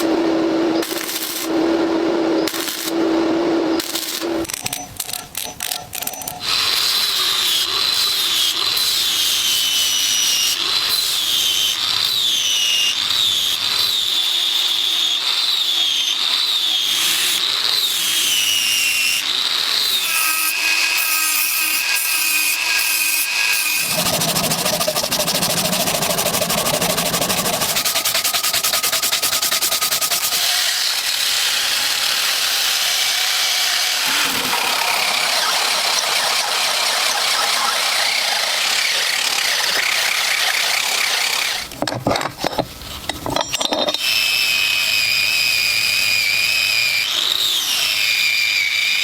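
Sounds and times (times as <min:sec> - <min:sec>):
power tool whining on metal: 0:00.0 - 0:49.0.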